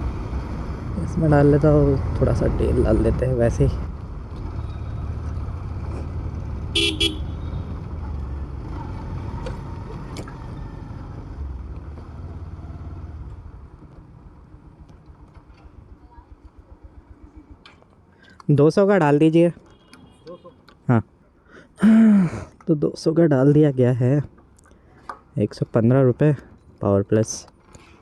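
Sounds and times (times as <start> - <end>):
motorcycle engine: 0.0 - 17.6
road rumble: 0.0 - 28.0
vehicle horn tooting: 6.8 - 7.6, 19.7 - 20.6.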